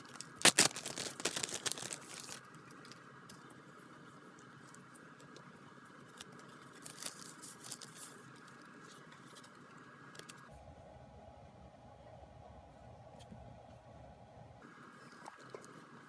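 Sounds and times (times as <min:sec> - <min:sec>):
packaging rustling: 0:00.0 - 0:02.5, 0:06.6 - 0:08.2
steady background hum: 0:00.0 - 0:16.0.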